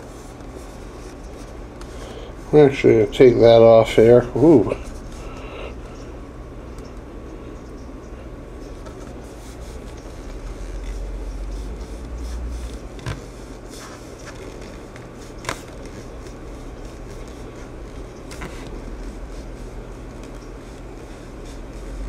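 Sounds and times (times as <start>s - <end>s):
low background hum: 0.0s - 22.0s
faint handling scrapes: 8.7s - 22.0s.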